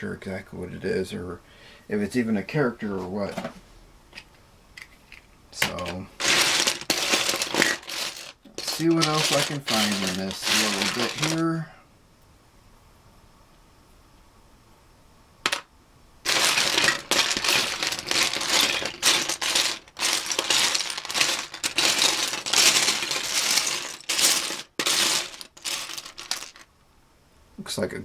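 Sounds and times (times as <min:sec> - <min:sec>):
plastic bricks clattering: 0:05.6 - 0:11.6, 0:15.5 - 0:15.7, 0:16.3 - 0:26.7.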